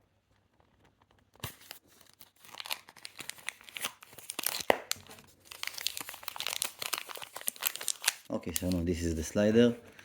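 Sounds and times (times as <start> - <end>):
plastic packaging crinkling: 1.4 - 9.2.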